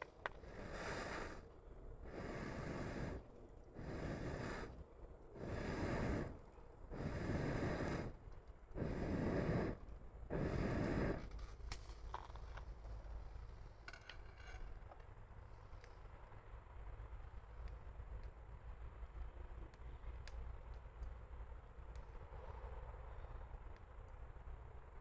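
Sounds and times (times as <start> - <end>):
burning wood crackling: 0.0 - 14.3
breaths blown into fire: 0.4 - 11.3.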